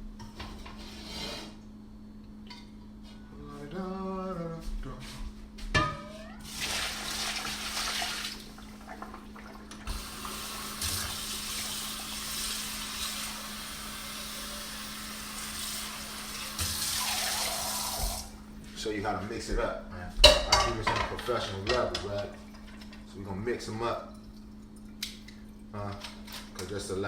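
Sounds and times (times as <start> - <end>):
tap running water into sink: 6.5 - 18.3.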